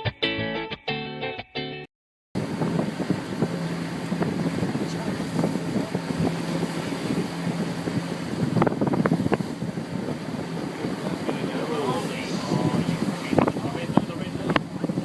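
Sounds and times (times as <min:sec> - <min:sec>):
boat engine humming: 0:02.4 - 0:15.0
wind buffeting microphone: 0:02.4 - 0:15.0.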